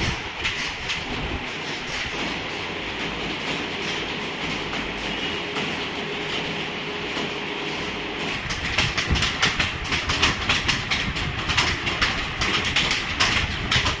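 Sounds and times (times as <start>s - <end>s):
fast typing on keyboard: 8.4s - 14.0s.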